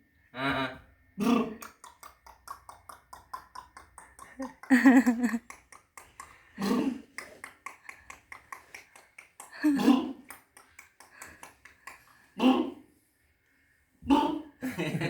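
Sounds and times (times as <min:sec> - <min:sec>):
child's mouth clicks and smacks: 0:01.6 - 0:06.4, 0:07.1 - 0:12.2.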